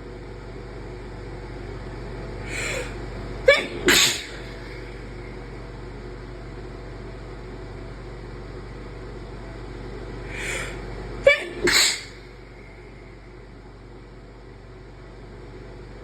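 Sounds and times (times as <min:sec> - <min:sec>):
person sneezing: 0:02.5 - 0:05.0, 0:10.4 - 0:12.3.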